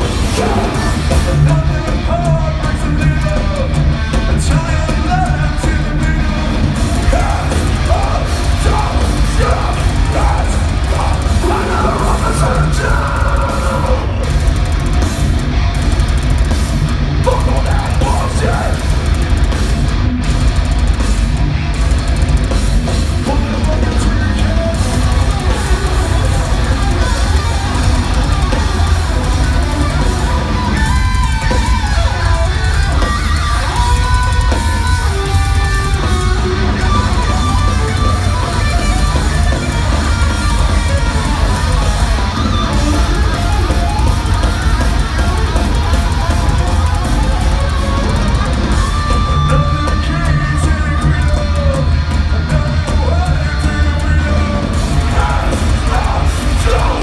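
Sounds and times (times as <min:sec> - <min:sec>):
electric guitar melody: 0:00.0 - 0:57.0
heavy metal band playing live: 0:00.0 - 0:57.0.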